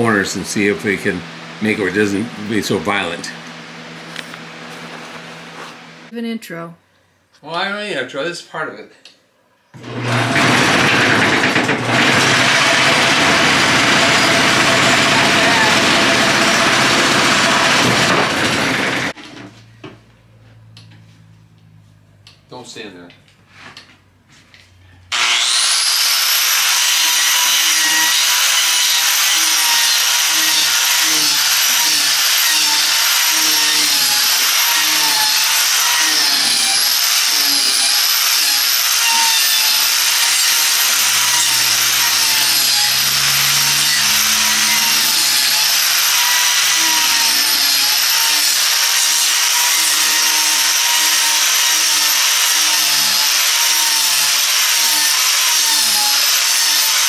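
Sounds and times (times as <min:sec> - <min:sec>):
power grinder cutting wood: 0:09.8 - 0:19.2, 0:25.1 - 0:57.0.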